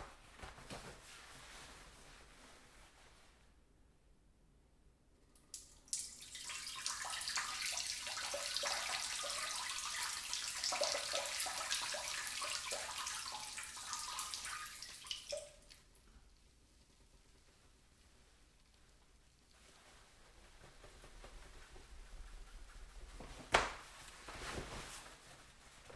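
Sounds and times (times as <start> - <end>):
person urinating: 5.5 - 16.1.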